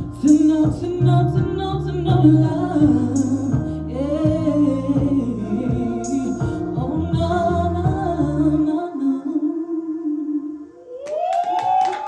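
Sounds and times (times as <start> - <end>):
slow ballad backing track: 0.0 - 9.4.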